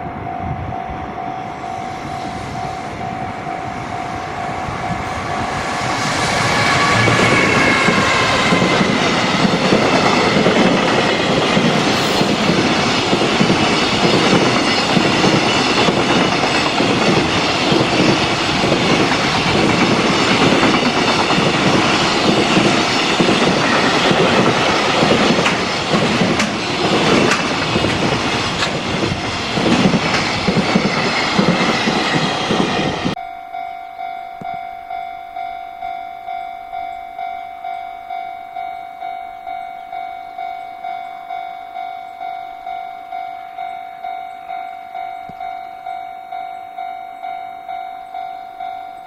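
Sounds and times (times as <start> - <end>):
crossing warning bell: 0.0 - 49.0
high train whine: 0.0 - 49.0
freight train wheels clacking: 1.4 - 33.2.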